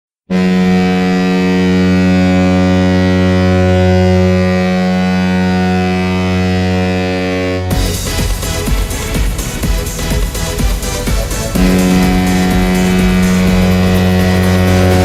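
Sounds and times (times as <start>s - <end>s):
arena goal horn blast: 0.3s - 8.0s, 11.6s - 15.0s.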